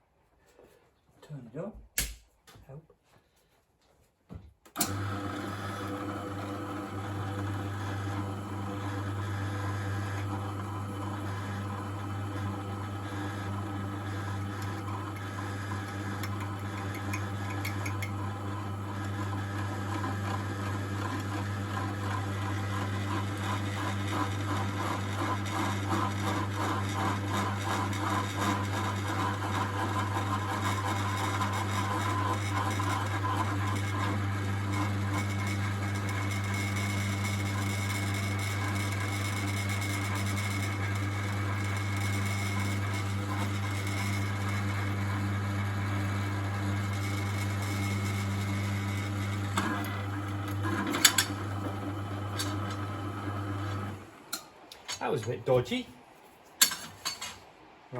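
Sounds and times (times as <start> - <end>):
electric drill boring into metal: 6.4 - 54.0.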